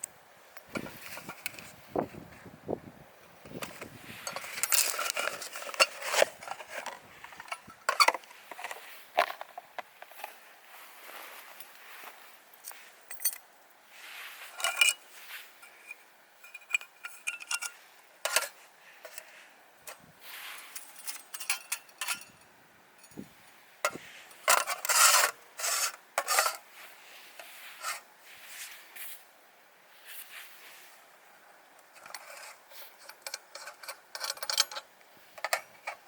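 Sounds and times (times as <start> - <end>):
scraping and rubbing on wood: 23.9 - 26.6.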